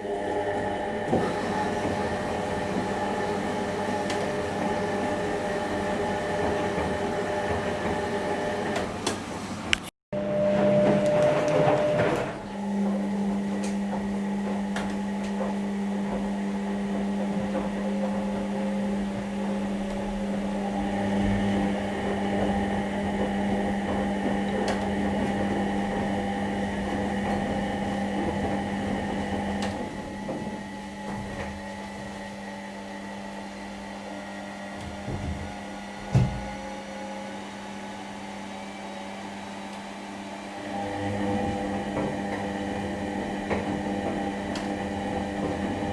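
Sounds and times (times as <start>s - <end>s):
washing machine motor humming: 0.0s - 45.9s.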